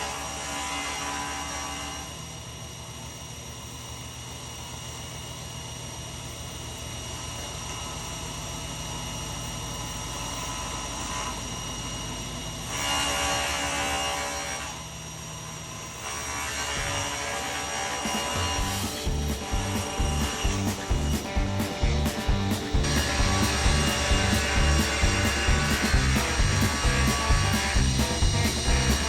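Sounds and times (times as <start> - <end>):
table saw cutting wood: 0.0 - 2.4, 9.7 - 29.0.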